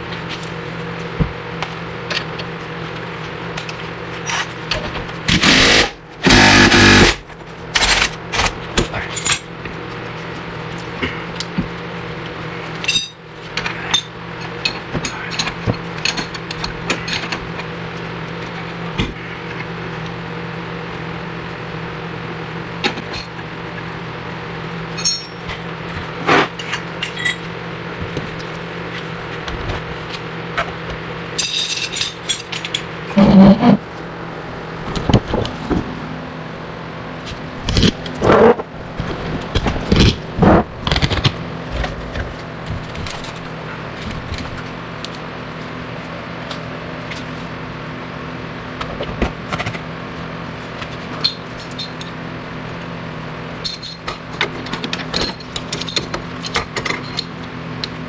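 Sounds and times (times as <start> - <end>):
steady low hum: 0.0 - 58.0
metal tools clanking on suspension: 25.0 - 25.4.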